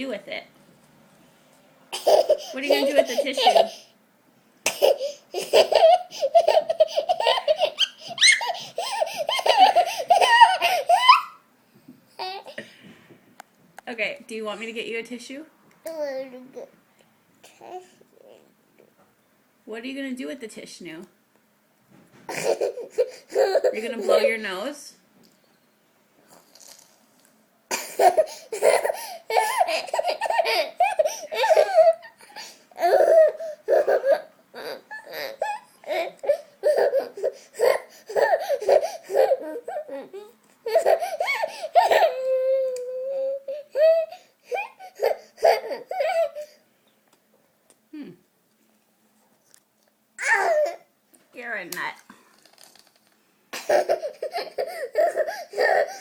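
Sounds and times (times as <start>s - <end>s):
toddler laughing: 1.9s - 3.9s, 4.7s - 11.4s, 22.3s - 24.4s, 27.7s - 46.6s, 50.2s - 50.9s, 53.6s - 56.0s
toddler sniffling: 54.0s - 56.0s.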